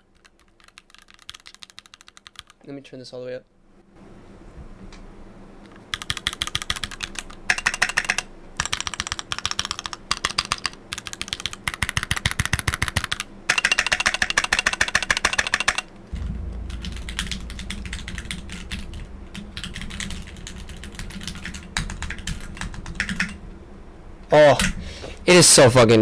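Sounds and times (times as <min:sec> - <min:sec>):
mechanical keyboard typing: 0:00.1 - 0:02.6, 0:05.9 - 0:15.8
steady low hum: 0:13.2 - 0:26.0.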